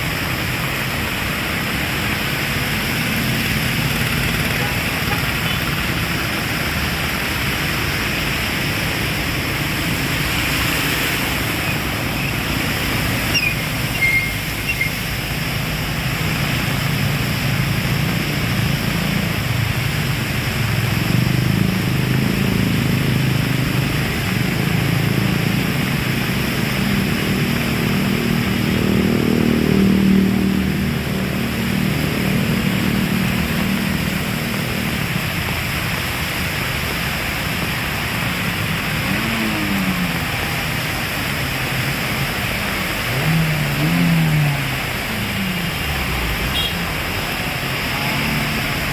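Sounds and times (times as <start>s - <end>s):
heavy rain pouring: 0.0s - 48.9s.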